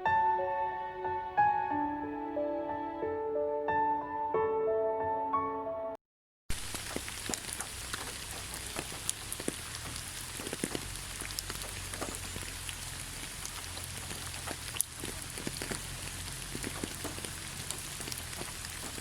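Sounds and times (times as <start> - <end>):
rain falling on leaves: 6.5 - 19.0.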